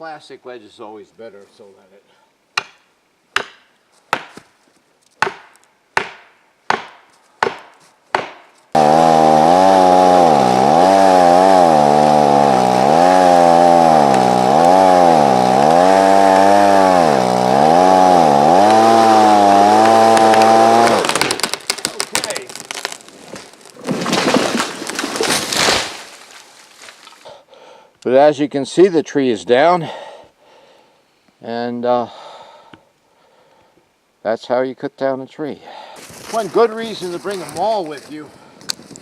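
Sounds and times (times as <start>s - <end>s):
chainsaw cutting: 8.7s - 27.3s.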